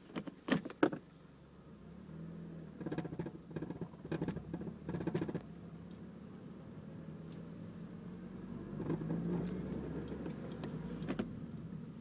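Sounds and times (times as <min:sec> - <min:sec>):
car engine idling hum: 0:01.0 - 0:12.0
exhaust rattling buzz: 0:02.6 - 0:05.6, 0:08.3 - 0:11.8.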